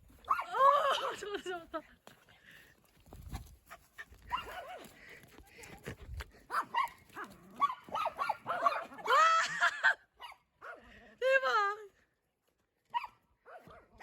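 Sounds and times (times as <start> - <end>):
dog barking and yipping: 4.2 - 4.8, 6.5 - 9.2, 10.2 - 10.8, 12.9 - 13.8.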